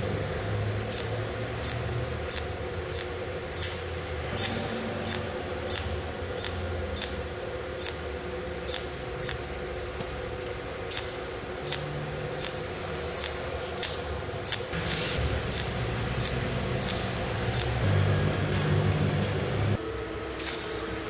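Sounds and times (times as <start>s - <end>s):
welding machine pulse clicks: 0.0s - 9.5s, 10.9s - 19.8s
machine hum: 9.6s - 21.0s.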